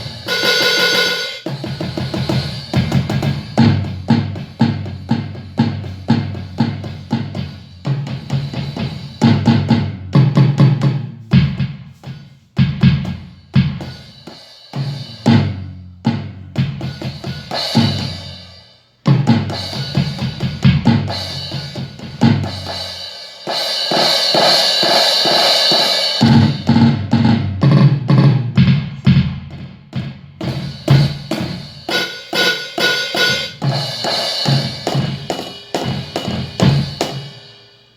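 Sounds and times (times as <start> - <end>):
snare drum hits: 0.0 - 13.8, 23.6 - 37.4
bass drum hits: 26.2 - 31.7.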